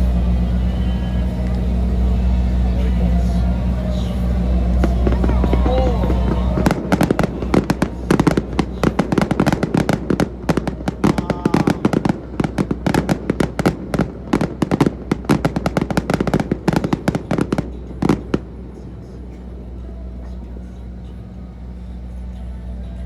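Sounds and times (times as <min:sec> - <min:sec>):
fireworks bangs and crackling pops: 0:03.3 - 0:19.4.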